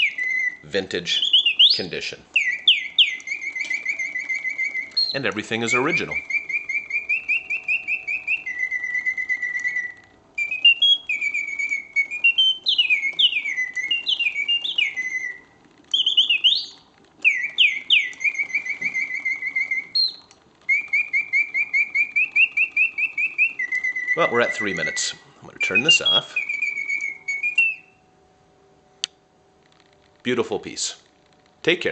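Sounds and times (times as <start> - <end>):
mechanical whistle birdsong trills: 0.0 - 31.0.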